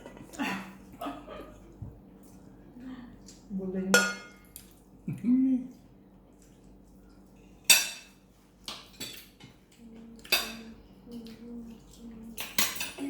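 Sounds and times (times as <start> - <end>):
dishes and cutlery clinking: 3.9 - 4.5, 7.4 - 9.6, 10.2 - 10.8, 11.8 - 13.0.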